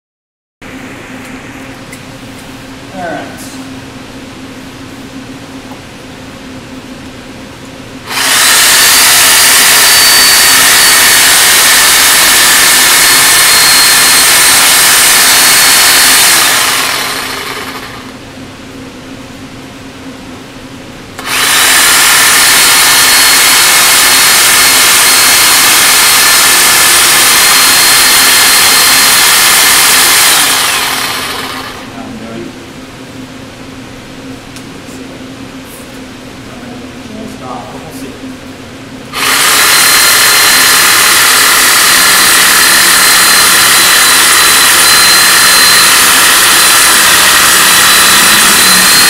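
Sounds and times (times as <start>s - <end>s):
power saw cutting bone: 8.1s - 18.1s, 21.2s - 31.9s, 39.2s - 49.0s.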